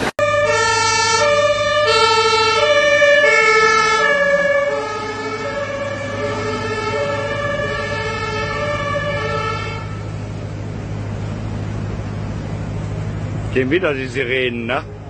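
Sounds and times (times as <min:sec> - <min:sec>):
two-tone emergency siren: 0:00.0 - 0:10.5.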